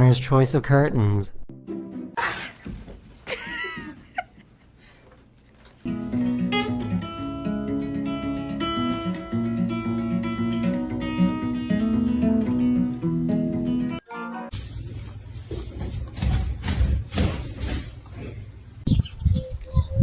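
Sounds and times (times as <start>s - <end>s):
acoustic guitar music: 5.8s - 14.8s.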